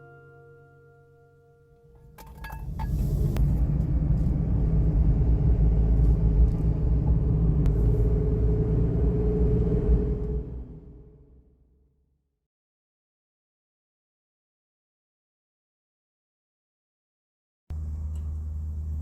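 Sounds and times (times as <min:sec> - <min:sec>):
car engine and road noise: 0:01.8 - 0:11.9, 0:17.7 - 0:19.0.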